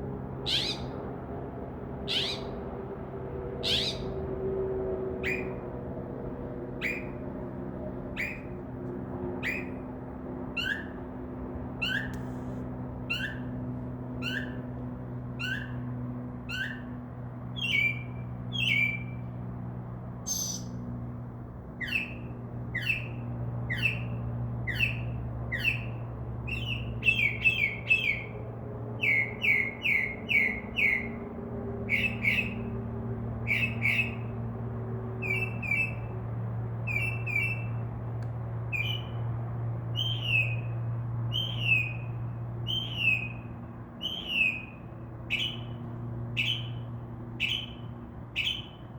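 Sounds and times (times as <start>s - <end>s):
steady low hum: 0.0s - 48.9s
mockingbird singing: 0.4s - 1.0s, 2.0s - 2.6s, 3.6s - 4.2s, 5.2s - 5.6s, 9.4s - 9.8s, 17.6s - 19.2s, 20.3s - 20.8s, 21.8s - 24.1s, 26.5s - 28.3s, 29.0s - 31.2s, 31.9s - 32.6s, 33.5s - 34.2s, 38.7s - 39.2s, 40.0s - 40.6s, 41.3s - 42.0s, 42.7s - 43.4s, 44.0s - 45.8s, 46.4s - 47.8s, 48.4s - 48.8s.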